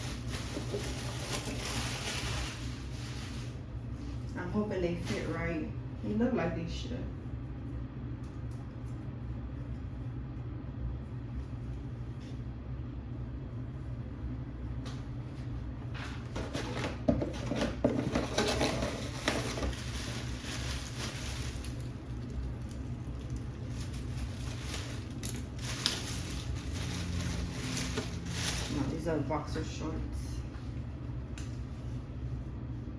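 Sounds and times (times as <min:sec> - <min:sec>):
packaging rustling and crinkling: 0:00.0 - 0:03.6, 0:16.4 - 0:29.1
steady low hum: 0:00.0 - 0:32.9.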